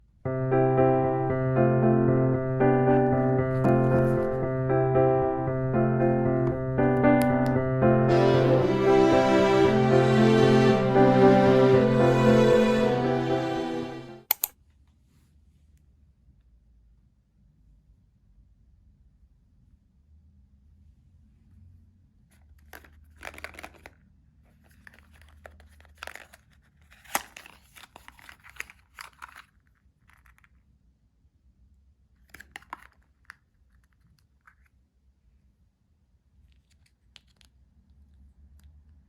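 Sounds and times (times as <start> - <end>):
packaging tearing and crinkling: 24.8 - 30.5.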